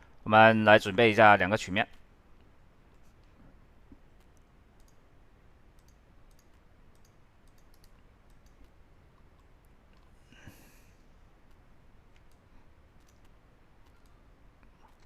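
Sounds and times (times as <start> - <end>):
computer mouse clicks: 1.9 - 5.1, 5.7 - 10.2, 11.4 - 15.0.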